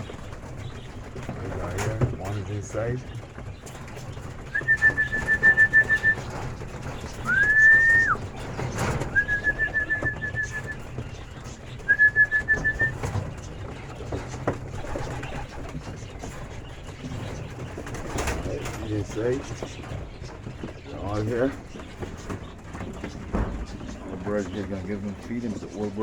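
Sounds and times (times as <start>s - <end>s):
high whistled trills: 4.6s - 6.3s, 7.2s - 8.2s, 9.1s - 10.9s, 11.9s - 13.0s
rising whistle: 9.2s - 10.7s.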